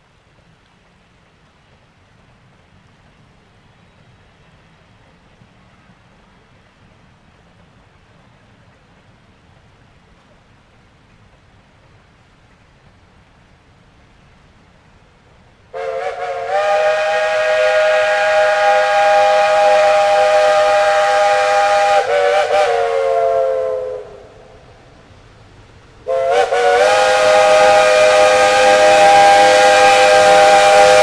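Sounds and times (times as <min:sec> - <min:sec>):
steam locomotive whistle blowing: 0:15.7 - 0:24.6, 0:26.0 - 0:31.0.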